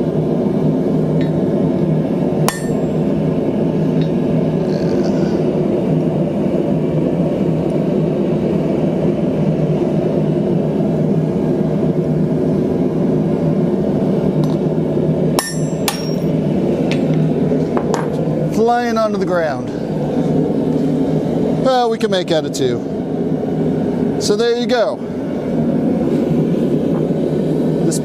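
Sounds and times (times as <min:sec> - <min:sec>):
loud low running noise: 0:00.0 - 0:28.0
hammer striking steel stamp: 0:02.5 - 0:02.9, 0:15.4 - 0:16.3.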